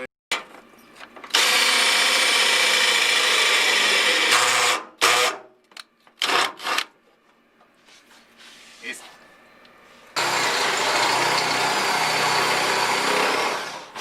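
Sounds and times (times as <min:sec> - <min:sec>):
power drill running: 0:01.3 - 0:05.4, 0:10.2 - 0:14.0.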